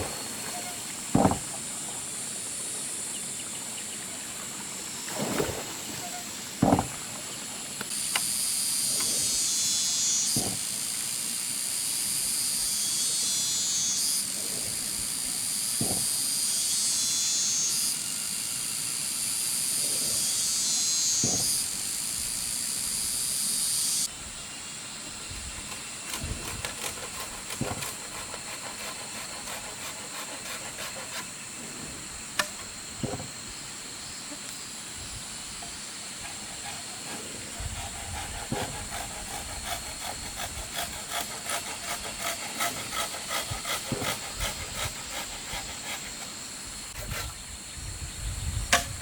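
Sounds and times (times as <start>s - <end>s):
dull knocks: 0.0s - 1.6s, 6.1s - 7.2s, 10.4s - 10.6s, 15.8s - 16.1s, 27.5s - 28.0s, 32.4s - 33.4s
insects buzzing: 0.0s - 49.0s.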